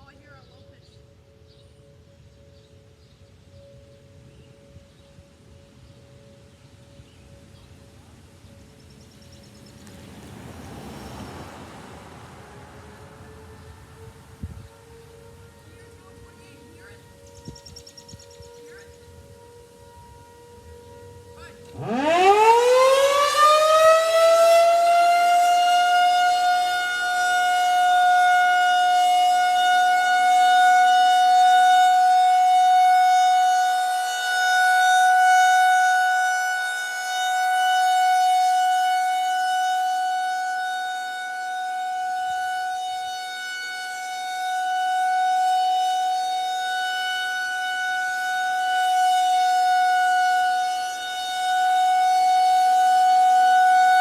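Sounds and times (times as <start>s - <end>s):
outdoor warning siren: 0.0s - 54.0s.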